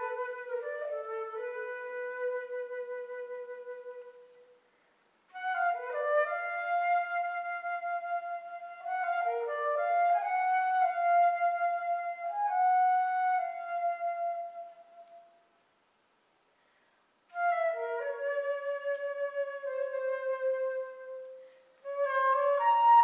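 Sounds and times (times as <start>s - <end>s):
solo flute playing: 0.0s - 15.6s, 17.3s - 23.0s.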